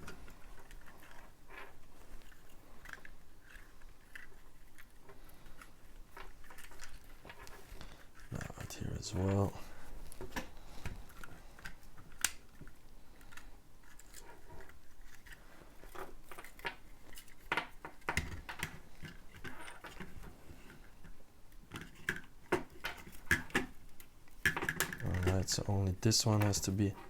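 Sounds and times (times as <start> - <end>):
plastic bricks clicking: 21.6 - 25.5.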